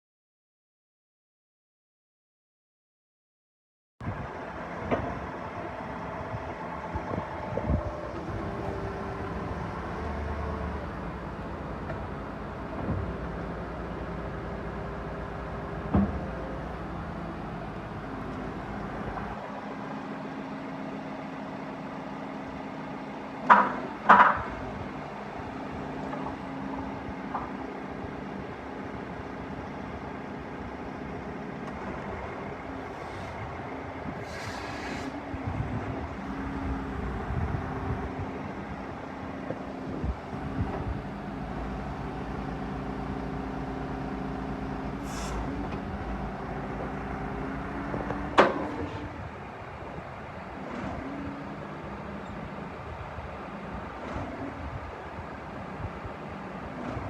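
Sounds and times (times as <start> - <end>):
excavator diesel engine running: 4.0 - 57.0
brief hiss: 34.2 - 35.2, 45.0 - 45.5.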